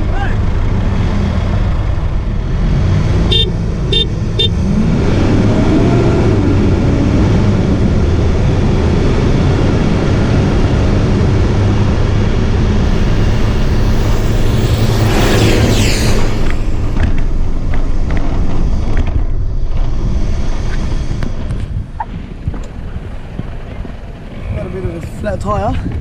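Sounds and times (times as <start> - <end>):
engine rumbling and revving: 12.8 - 18.4.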